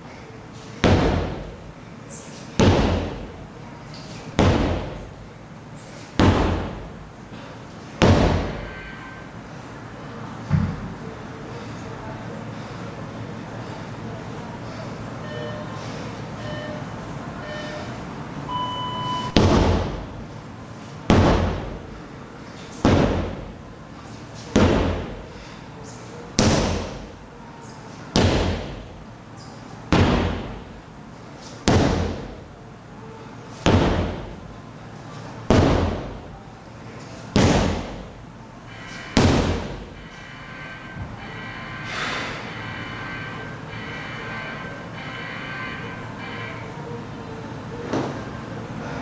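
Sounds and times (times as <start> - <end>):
sledgehammer strikes ringing: 38.7 - 44.5.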